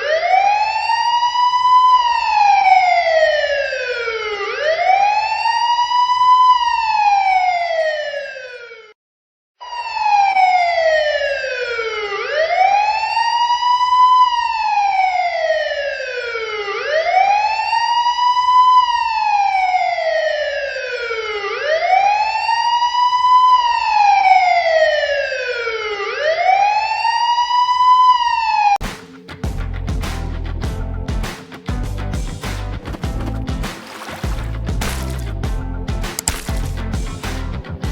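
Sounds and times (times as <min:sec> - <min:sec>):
police siren wailing: 0:00.0 - 0:09.0, 0:09.6 - 0:28.8.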